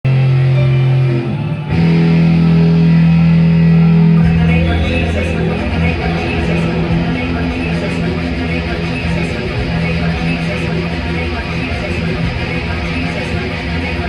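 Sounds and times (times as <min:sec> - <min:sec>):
rock band playing: 0:00.1 - 0:14.0.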